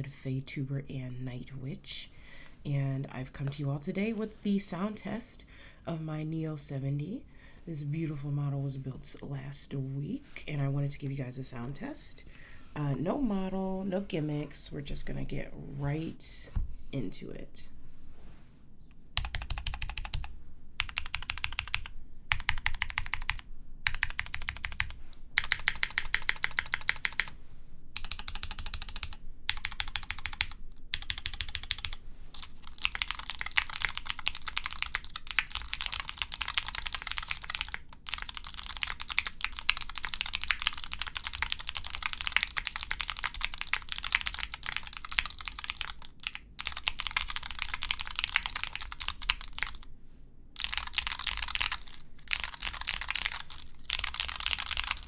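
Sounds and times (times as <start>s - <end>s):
mechanical keyboard typing: 19.2s - 27.4s, 28.0s - 49.8s, 50.6s - 55.0s.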